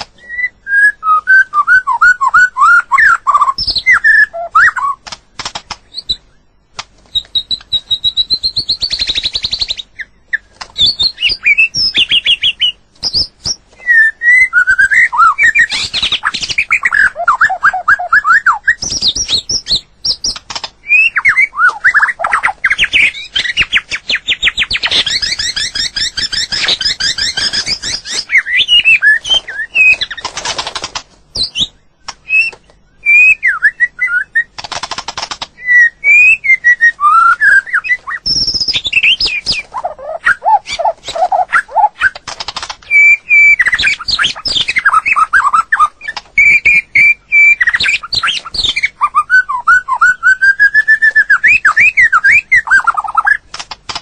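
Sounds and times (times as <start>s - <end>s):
bird singing whistled phrases: 0.2s - 5.0s, 7.2s - 30.2s, 31.4s - 34.5s, 35.6s - 42.2s, 42.8s - 53.4s
bird trills: 7.2s - 30.4s, 35.6s - 53.6s.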